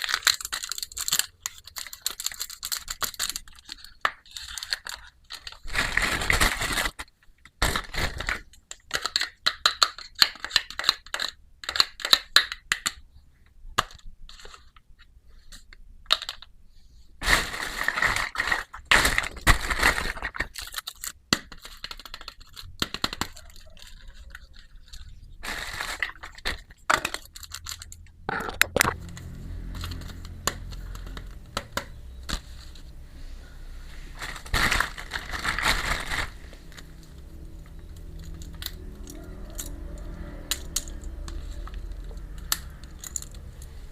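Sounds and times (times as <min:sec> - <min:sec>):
plastic toy pieces clicking: 0:00.0 - 0:05.6, 0:06.9 - 0:13.0, 0:15.5 - 0:16.5, 0:18.5 - 0:25.1, 0:26.0 - 0:32.4, 0:37.1 - 0:43.7
packaging crinkling: 0:00.0 - 0:09.3, 0:17.2 - 0:43.9.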